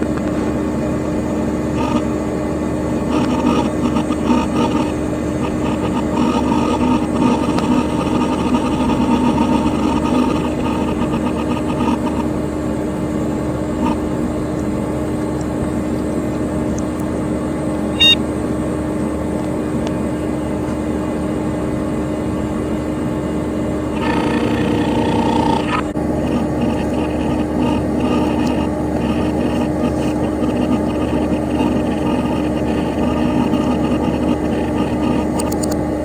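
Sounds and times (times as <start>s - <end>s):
computer fan humming: 0.0s - 36.0s
hard drive working: 0.0s - 36.0s.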